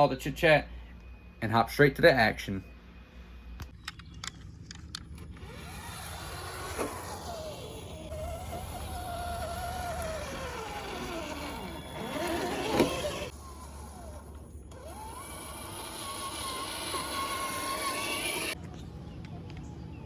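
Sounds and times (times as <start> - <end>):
toy car motor and gear whine: 3.9 - 18.6.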